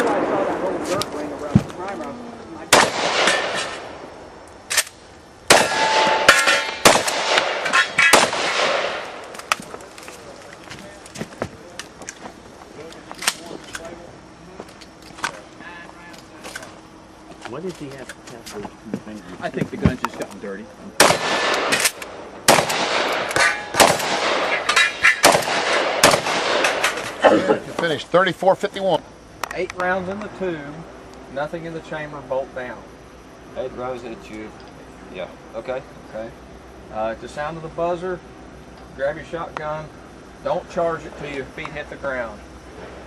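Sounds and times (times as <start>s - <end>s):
shotgun firing: 2.7s - 4.0s, 5.5s - 9.3s, 21.0s - 27.0s
steel targets clanging: 3.0s - 3.9s, 5.5s - 8.8s, 23.1s - 25.4s.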